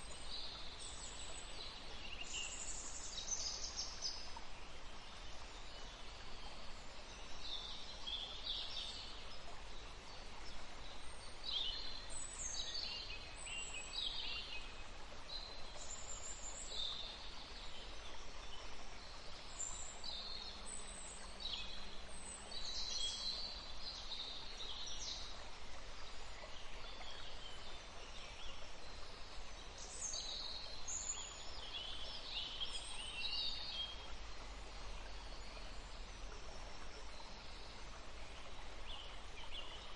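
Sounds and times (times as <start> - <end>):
faint running water: 0.0 - 39.9
songbirds chirping and trilling: 0.0 - 39.9.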